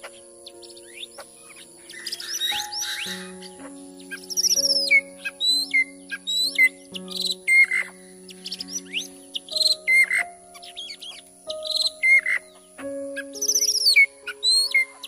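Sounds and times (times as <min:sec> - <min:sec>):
birds chirping and whistling: 0:00.0 - 0:15.0.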